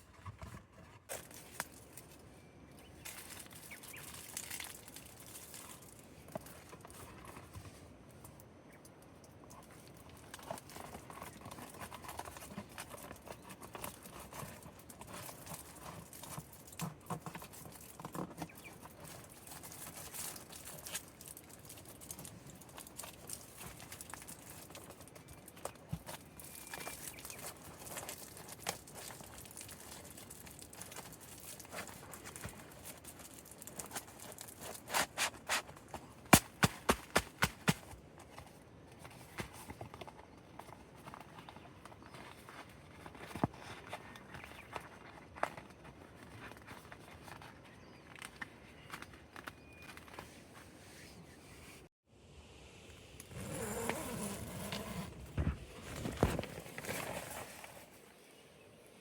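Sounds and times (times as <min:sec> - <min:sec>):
scraping and rubbing: 0:26.0 - 0:38.0.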